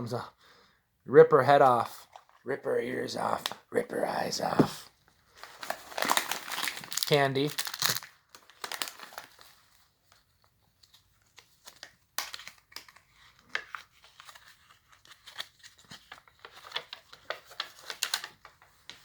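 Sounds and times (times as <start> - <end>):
packaging crinkling and tearing: 5.3 - 19.0.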